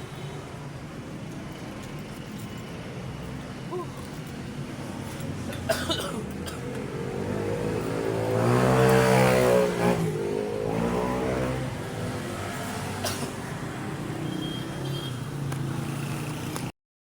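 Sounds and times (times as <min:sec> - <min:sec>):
vehicle engine revving: 0:06.7 - 0:13.0.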